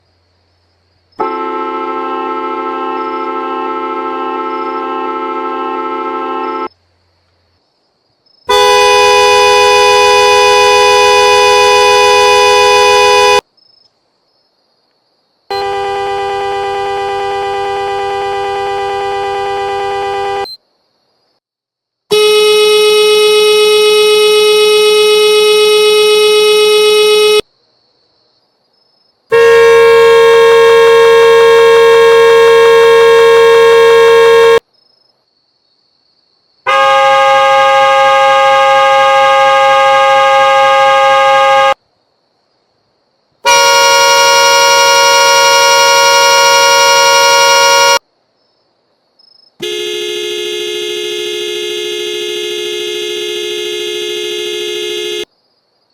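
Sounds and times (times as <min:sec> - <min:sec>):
long car horn blasts: 0:01.2 - 0:06.7, 0:08.5 - 0:13.4, 0:15.5 - 0:20.5, 0:22.1 - 0:27.5, 0:29.3 - 0:34.6, 0:36.7 - 0:41.8, 0:43.4 - 0:48.0, 0:49.6 - 0:55.3.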